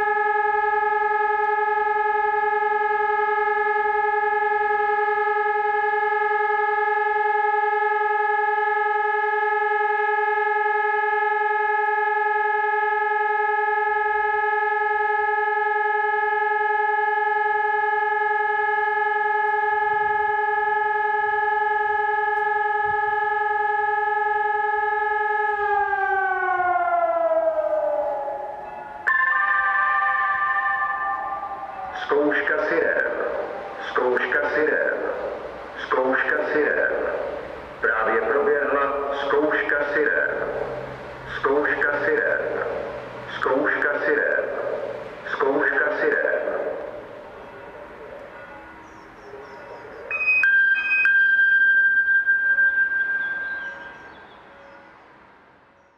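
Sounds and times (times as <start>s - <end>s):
electronic siren steady tone: 0.0s - 55.7s
higher steady tone: 50.1s - 54.6s.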